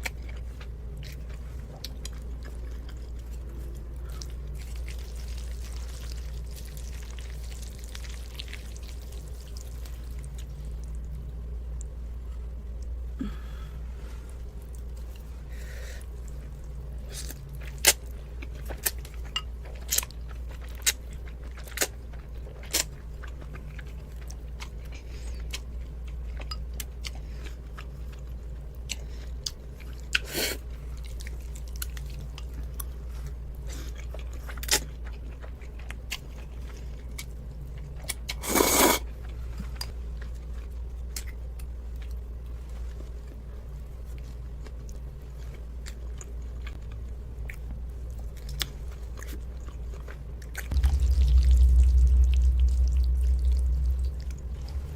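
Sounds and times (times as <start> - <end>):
steady low hum: 0.0 - 38.4, 39.0 - 54.9.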